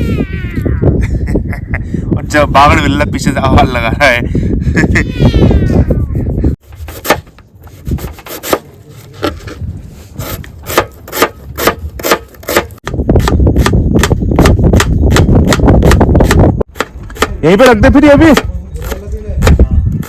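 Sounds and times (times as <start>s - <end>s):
strong wind rushing: 0.0s - 8.2s, 11.3s - 20.0s.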